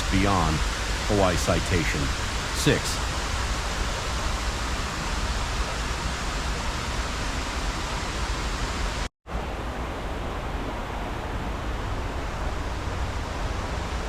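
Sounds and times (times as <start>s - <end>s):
shallow river flowing: 0.0s - 8.6s.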